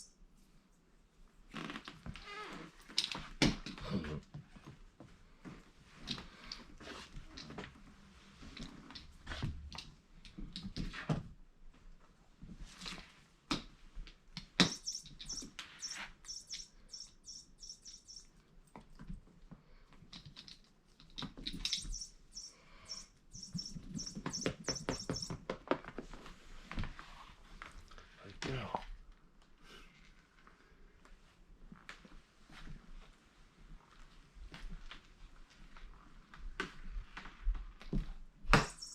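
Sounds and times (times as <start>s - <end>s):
electronic bird toy chirping: 14.6s - 18.3s, 21.6s - 25.4s, 38.6s - 38.9s
taps and knocks: 23.5s - 25.8s.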